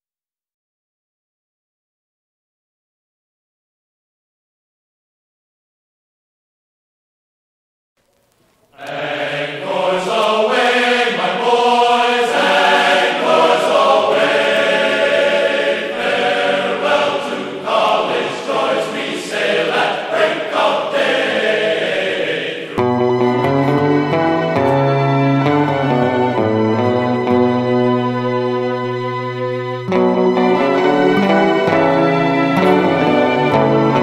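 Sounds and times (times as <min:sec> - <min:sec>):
background music track: 0:08.0 - 0:34.0
choral singing: 0:08.7 - 0:23.2.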